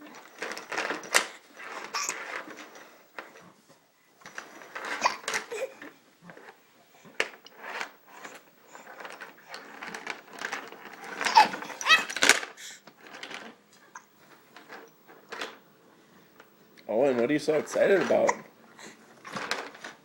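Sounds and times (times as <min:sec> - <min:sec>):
baby squealing: 0:05.0 - 0:05.8, 0:11.2 - 0:12.2.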